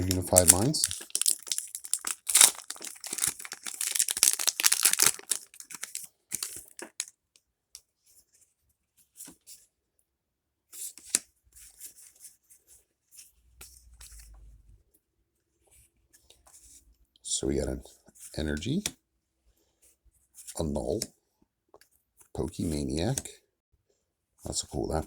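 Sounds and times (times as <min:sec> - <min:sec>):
foil pack tearing open: 0:00.0 - 0:07.1
wrapper and cards rustling: 0:00.0 - 0:07.1.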